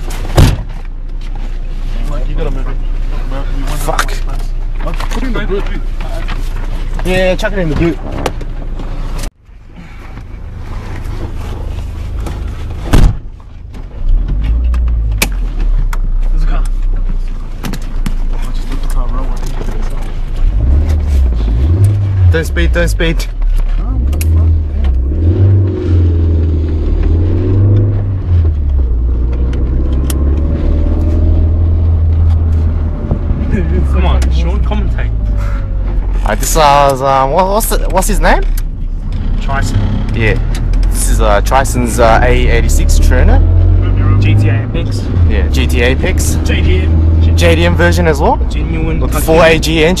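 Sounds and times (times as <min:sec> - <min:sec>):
car engine running: 0:00.0 - 0:50.0
road rumble: 0:00.0 - 0:50.0
loud thump: 0:00.3 - 0:00.8, 0:12.8 - 0:13.3.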